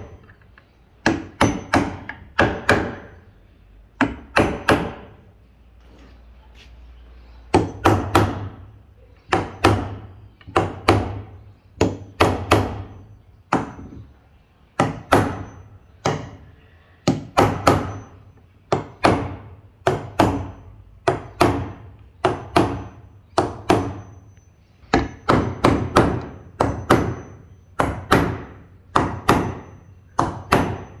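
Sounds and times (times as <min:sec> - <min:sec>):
hammer striking wood: 0:01.0 - 0:03.2, 0:04.0 - 0:05.2, 0:07.5 - 0:08.7, 0:09.3 - 0:14.2, 0:14.8 - 0:16.4, 0:17.0 - 0:24.2, 0:24.9 - 0:31.0.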